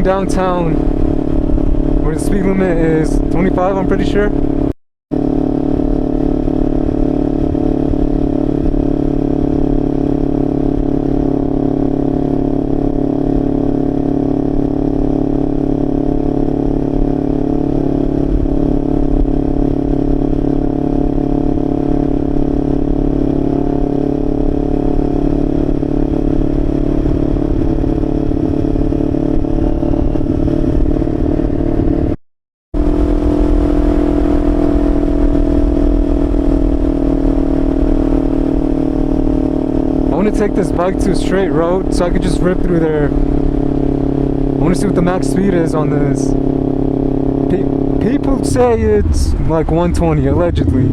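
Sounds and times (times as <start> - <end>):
wind rumble on microphone: 0.0 - 3.4, 16.7 - 32.2, 32.8 - 39.5, 48.6 - 50.9
motorcycle engine running: 0.0 - 32.2, 32.8 - 50.9.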